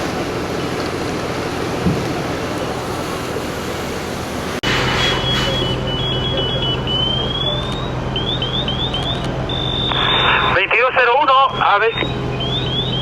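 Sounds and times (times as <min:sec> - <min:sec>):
high-pitched electronic beeps: 0:05.2 - 0:10.7.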